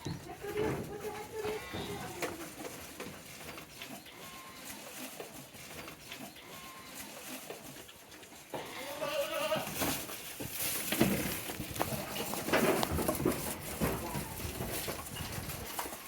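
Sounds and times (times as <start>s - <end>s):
goats rustling in grass: 0.0s - 16.0s
goat bleating: 1.0s - 2.5s, 8.5s - 9.9s.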